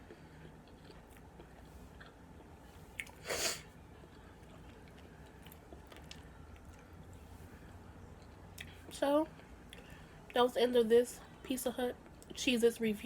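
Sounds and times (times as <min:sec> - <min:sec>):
person chewing: 0:00.0 - 0:07.1.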